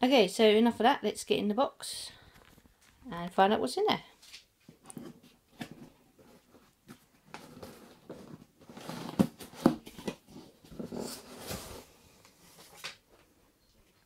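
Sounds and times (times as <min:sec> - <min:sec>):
cardboard box being opened: 0:04.9 - 0:12.8.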